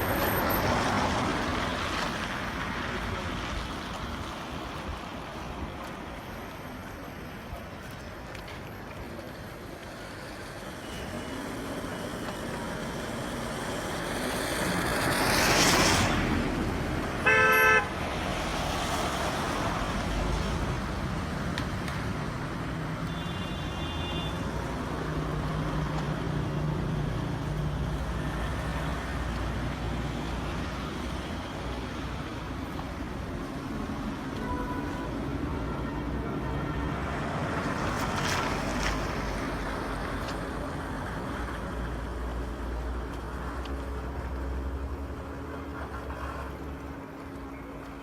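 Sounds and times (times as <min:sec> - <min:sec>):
traffic engines running: 0:00.0 - 0:48.0
car horn toot: 0:17.2 - 0:17.9.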